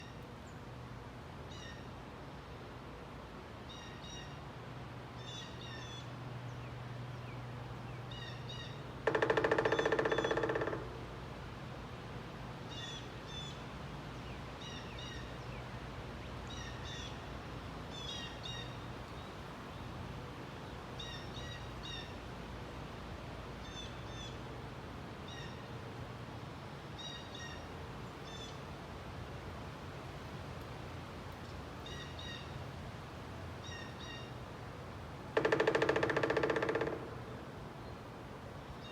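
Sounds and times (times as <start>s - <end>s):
woodpecker drumming: 9.0s - 11.2s, 35.3s - 37.5s.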